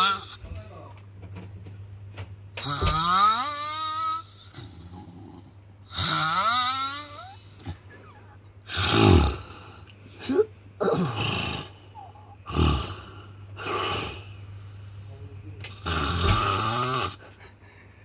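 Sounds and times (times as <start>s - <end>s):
person snoring heavily: 2.6s - 15.1s, 15.7s - 17.4s.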